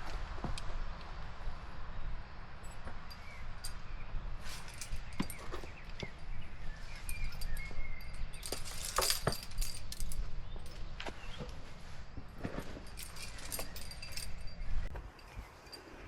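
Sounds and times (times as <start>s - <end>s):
wind rumble on microphone: 0.0s - 16.0s
faint bird chirps: 3.1s - 8.5s
sharp clicks and clinks: 7.0s - 10.9s, 12.5s - 15.9s.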